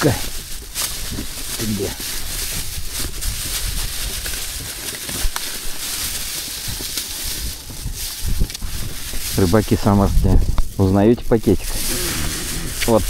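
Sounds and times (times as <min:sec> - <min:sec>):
wind buffeting microphone: 0:00.2 - 0:13.0.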